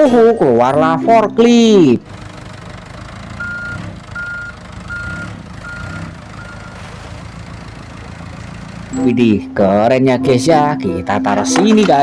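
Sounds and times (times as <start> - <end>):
low engine rumble: 0.0 - 11.2
reversing alarm beeping: 3.4 - 6.8.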